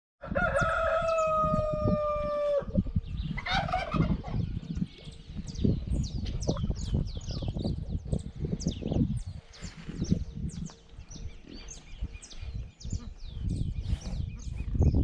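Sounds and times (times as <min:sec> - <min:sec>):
rooster crowing: 0:00.2 - 0:02.7
small birds chirping: 0:02.8 - 0:15.0.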